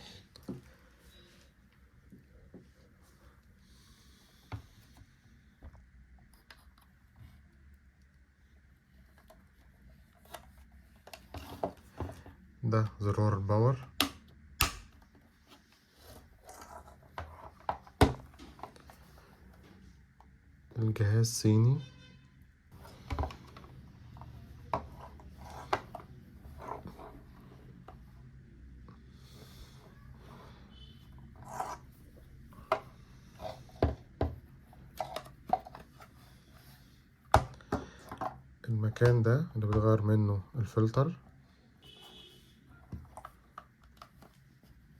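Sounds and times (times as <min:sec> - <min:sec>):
handling rubbing and scraping: 0:09.0 - 0:12.5, 0:15.3 - 0:20.0, 0:22.7 - 0:38.4.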